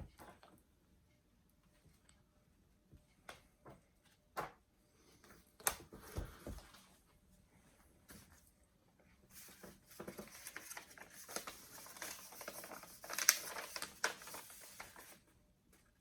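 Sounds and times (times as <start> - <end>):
paper and cardboard rustling: 9.3 - 15.3.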